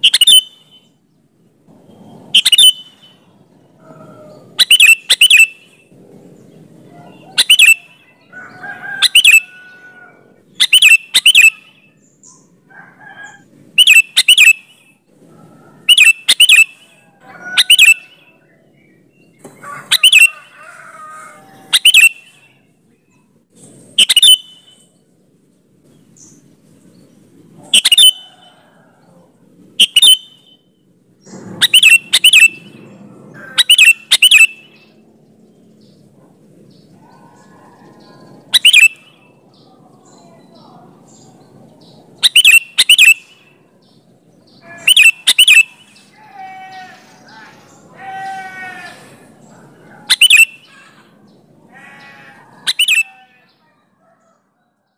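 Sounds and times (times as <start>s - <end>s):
bulbul calling: 0.0s - 0.9s, 2.3s - 12.5s, 13.3s - 15.0s, 15.8s - 18.4s, 19.3s - 20.7s, 21.6s - 22.6s, 23.9s - 24.9s, 27.6s - 35.0s, 36.7s - 53.4s.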